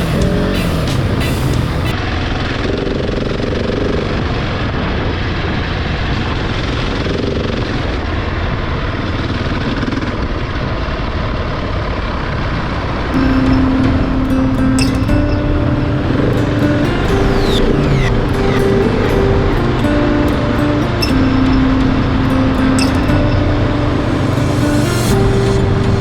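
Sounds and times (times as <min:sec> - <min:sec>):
motorcycle engine rumbling: 0:00.0 - 0:01.9, 0:13.2 - 0:26.0.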